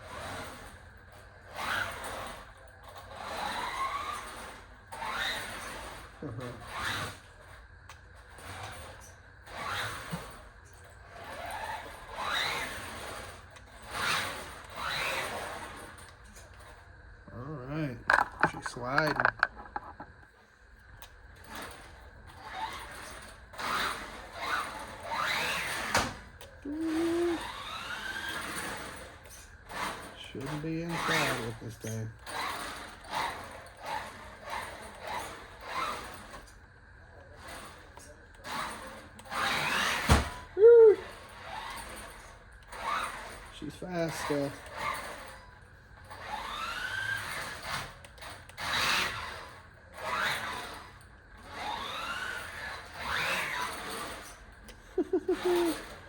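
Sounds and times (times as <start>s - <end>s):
toy car electric motor revving: 0.0s - 20.2s, 21.4s - 56.0s
tires sliding on floor: 46.1s - 56.0s.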